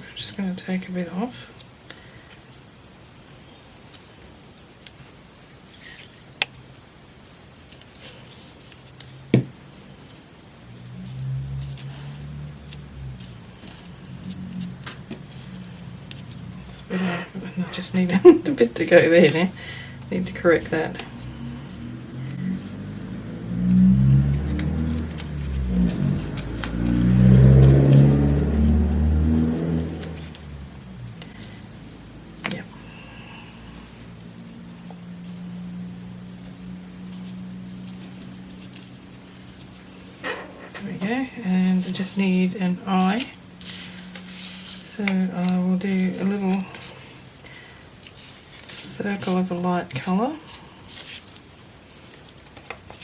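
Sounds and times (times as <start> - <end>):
low hum: 7.3 - 49.7
passing vehicle engine rumble: 7.8 - 53.0
scissors snipping paper: 24.3 - 28.6, 48.0 - 53.0.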